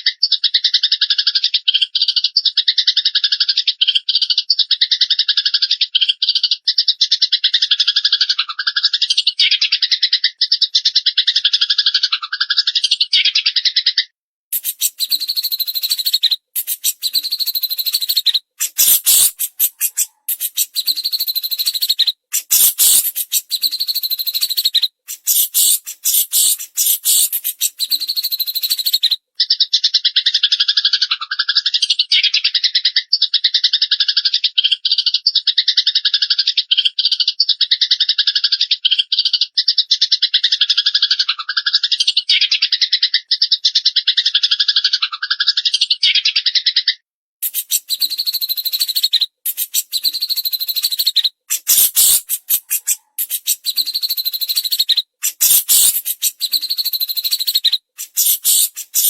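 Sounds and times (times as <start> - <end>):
high songbird twittering: 14.5 - 29.2, 47.4 - 59.0.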